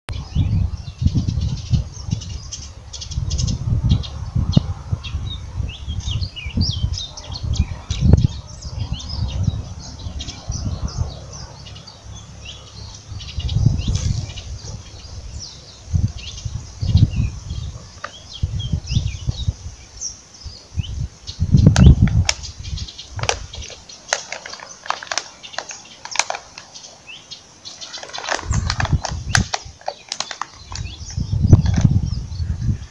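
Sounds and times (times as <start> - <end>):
birds chirping and calling: 0.1 - 32.9.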